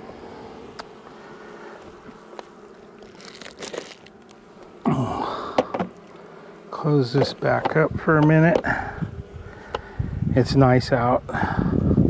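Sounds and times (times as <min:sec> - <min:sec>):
honeybees buzzing: 0:00.0 - 0:12.0.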